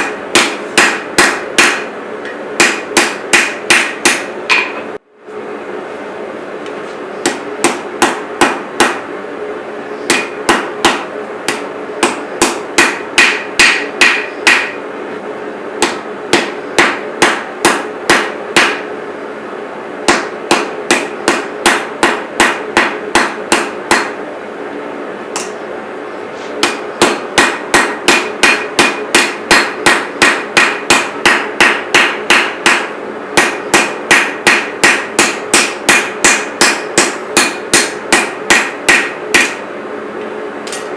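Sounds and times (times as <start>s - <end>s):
hammer striking metal on anvil: 0.0s - 4.9s, 7.2s - 9.1s, 10.1s - 14.8s, 15.8s - 18.9s, 20.1s - 24.2s, 25.4s - 25.6s, 26.6s - 39.6s.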